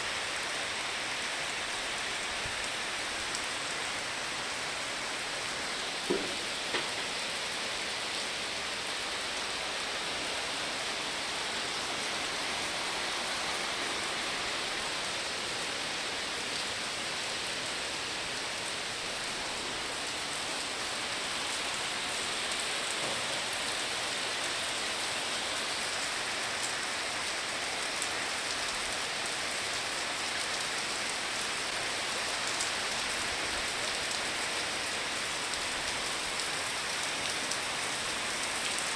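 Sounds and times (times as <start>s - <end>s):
steady rain: 0.0s - 38.9s
small knocks: 6.0s - 7.0s.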